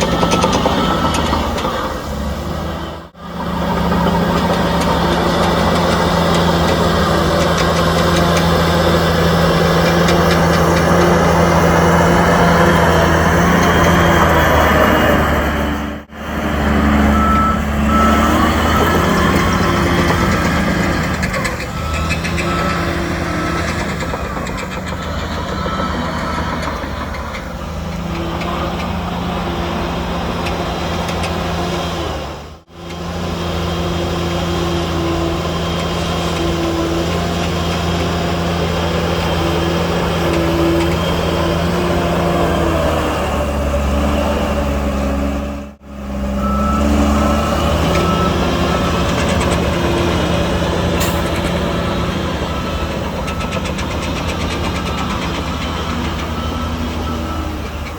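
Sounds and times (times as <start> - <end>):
reversing alarm beeping: 0.0 - 30.0, 44.3 - 57.9
heavy machinery diesel engines: 0.0 - 57.9.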